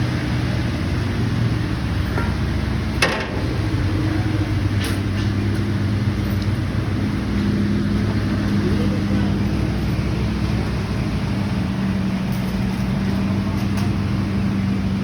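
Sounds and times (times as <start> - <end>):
machine engine running: 0.0 - 15.0
sharp metallic clank: 3.0 - 3.9.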